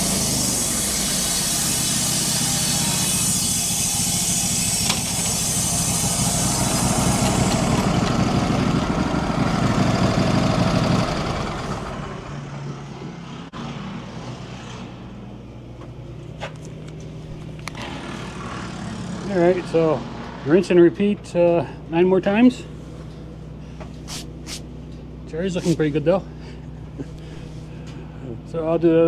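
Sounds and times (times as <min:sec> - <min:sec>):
band saw cutting wood: 0:00.0 - 0:12.0, 0:17.5 - 0:21.2
sawmill machine humming: 0:00.0 - 0:29.0.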